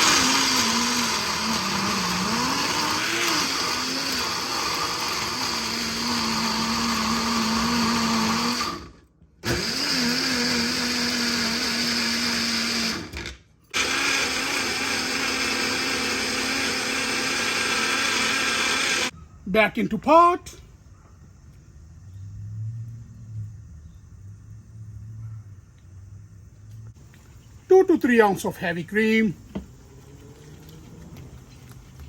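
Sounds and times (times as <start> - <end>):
electric blender motor whine: 0.0 - 19.2.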